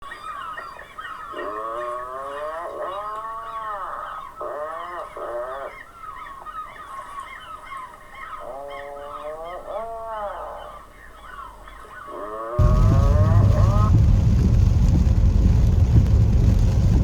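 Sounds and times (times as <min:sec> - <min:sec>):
seabirds drawn-out calls: 0:00.2 - 0:12.6
seabirds chattering: 0:00.2 - 0:13.9.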